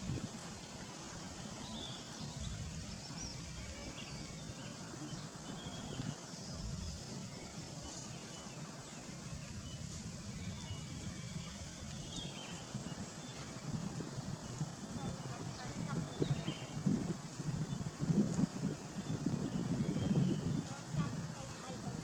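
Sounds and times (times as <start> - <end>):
wind on microphone: 0.0 - 22.0
birds chirping: 1.2 - 22.0.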